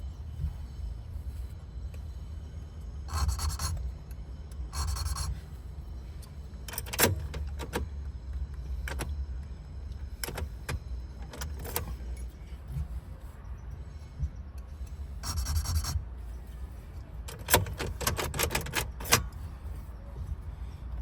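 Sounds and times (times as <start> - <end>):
metallic clicks from keys: 17.3 - 19.4.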